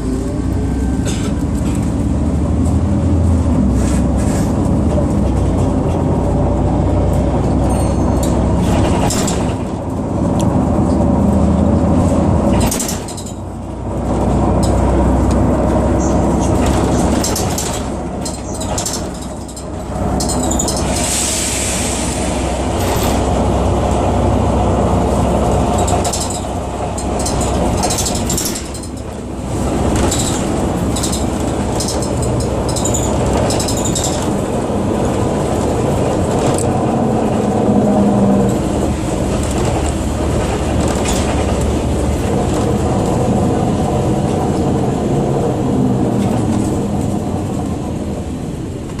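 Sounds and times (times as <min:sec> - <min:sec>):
bus diesel engine rumble: 0:00.0 - 0:49.0
rattles: 0:07.6 - 0:10.0, 0:12.4 - 0:14.9, 0:16.0 - 0:21.1, 0:25.4 - 0:37.5.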